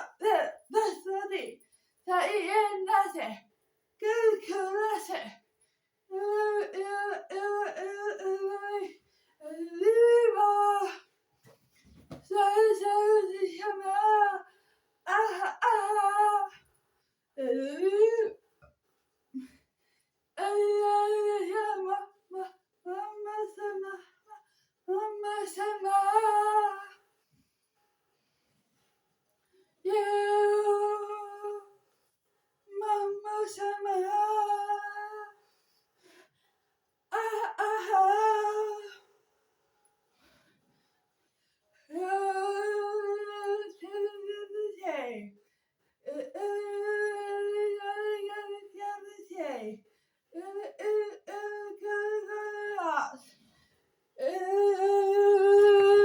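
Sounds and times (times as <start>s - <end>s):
high voice singing wordless notes: 29.8s - 31.7s.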